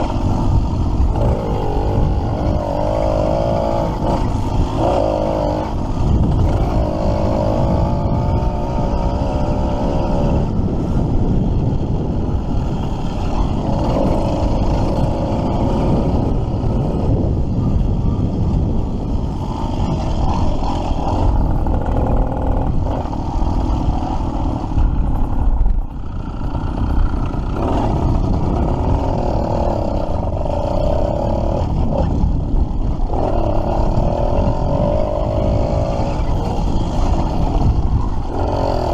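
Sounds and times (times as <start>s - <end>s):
two-stroke engine revving: 0.0s - 38.9s.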